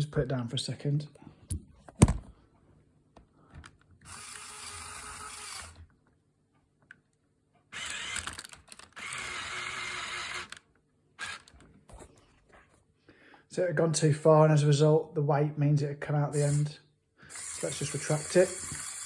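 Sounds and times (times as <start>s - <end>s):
toy motor grinding gears: 4.1s - 5.8s, 7.7s - 10.6s, 11.2s - 12.0s, 16.3s - 19.0s.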